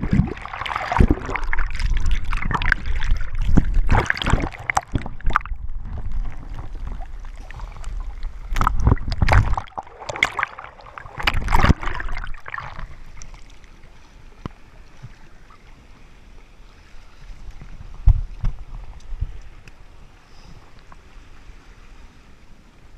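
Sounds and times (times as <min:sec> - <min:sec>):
seawater surging through rocks: 0:00.0 - 0:08.0, 0:08.6 - 0:12.8.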